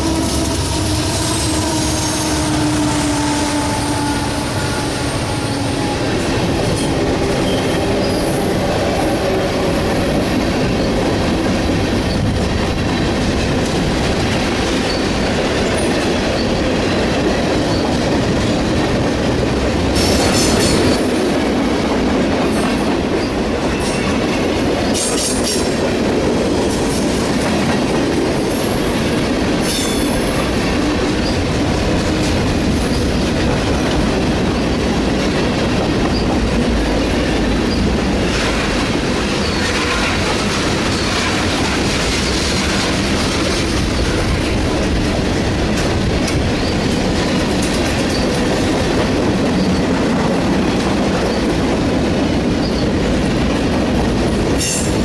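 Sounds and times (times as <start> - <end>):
high-pitched wheel squeals: 0.0 - 11.0
train wheels rumbling on rail: 0.0 - 55.0.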